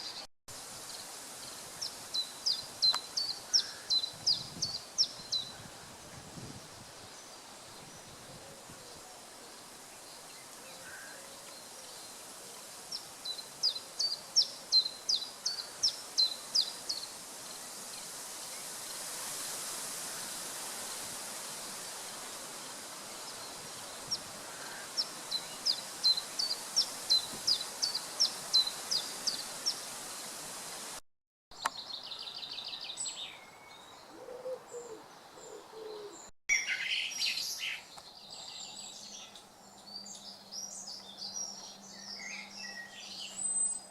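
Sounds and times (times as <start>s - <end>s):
stream rushing: 12.9s - 31.0s.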